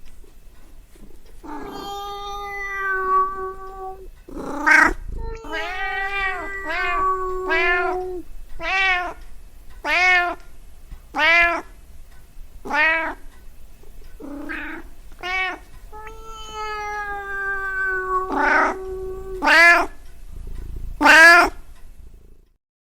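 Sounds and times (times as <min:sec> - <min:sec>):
cat meowing: 0:01.4 - 0:09.2, 0:09.8 - 0:10.4, 0:11.1 - 0:11.7, 0:12.6 - 0:13.3, 0:14.2 - 0:20.0, 0:21.0 - 0:21.6.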